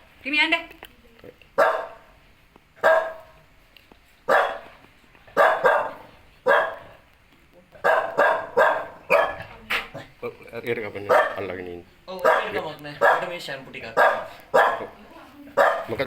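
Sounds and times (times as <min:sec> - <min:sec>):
dog barking: 0:01.6 - 0:02.1, 0:02.8 - 0:03.4, 0:04.3 - 0:07.0, 0:07.8 - 0:10.0, 0:11.0 - 0:11.6, 0:12.2 - 0:16.0.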